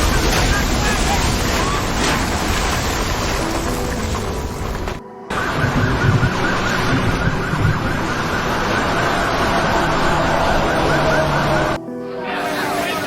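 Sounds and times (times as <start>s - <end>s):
loud steady rushing noise: 0.0s - 13.0s
siren: 3.6s - 11.8s.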